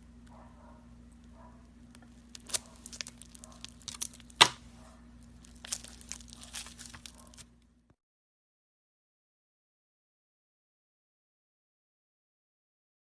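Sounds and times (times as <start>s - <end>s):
crackling and tearing clicks: 1.9s - 7.7s
sharp snap: 4.4s - 4.6s.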